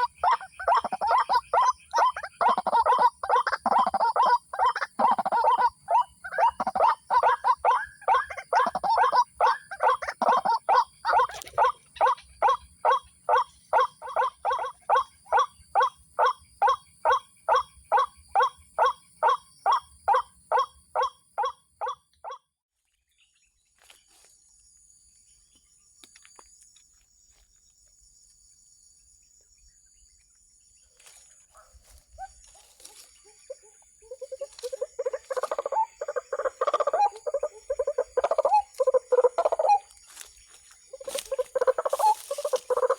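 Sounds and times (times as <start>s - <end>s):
waterhen calling: 0.0s - 22.0s, 33.6s - 40.3s, 40.9s - 42.9s.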